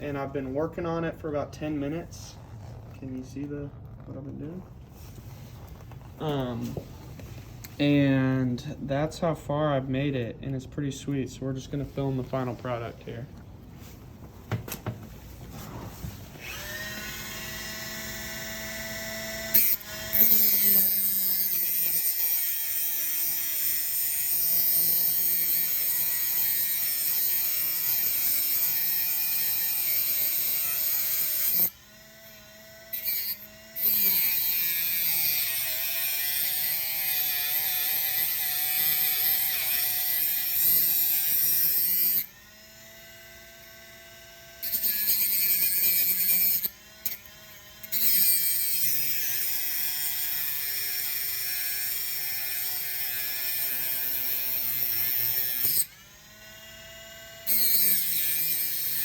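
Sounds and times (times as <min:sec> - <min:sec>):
rotary tool motor whining: 0:15.6 - 0:59.0
rotary tool grinding metal: 0:15.9 - 0:59.0.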